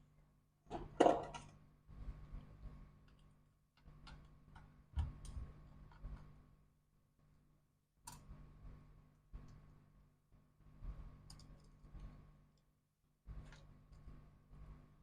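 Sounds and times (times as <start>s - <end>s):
faint steady hum: 0.0s - 15.0s
small tools clicking and tapping: 3.1s - 6.3s, 11.3s - 12.0s.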